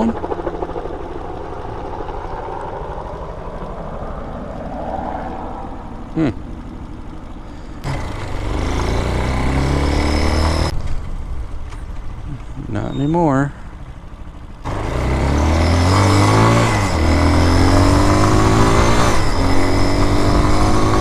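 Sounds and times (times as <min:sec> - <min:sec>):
dirt bike engine revving: 0:07.5 - 0:10.7, 0:14.6 - 0:21.0.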